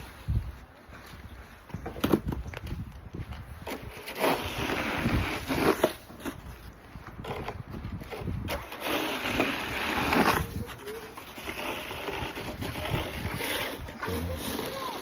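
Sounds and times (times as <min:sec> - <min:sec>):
footsteps crunching in snow: 0:00.0 - 0:14.8
snow shovel scraping: 0:03.6 - 0:06.5, 0:07.2 - 0:15.0.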